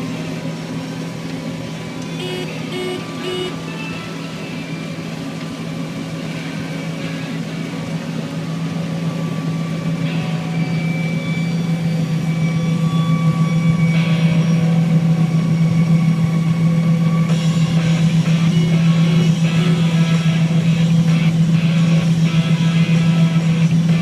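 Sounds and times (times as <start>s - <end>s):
harvest machinery engine drone: 0.0s - 24.0s
music playing: 2.1s - 4.2s.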